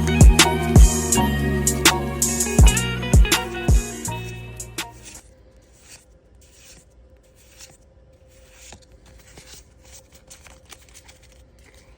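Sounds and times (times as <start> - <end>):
background music: 0.0 - 5.2
trading cards rubbing and rustling: 2.2 - 11.9.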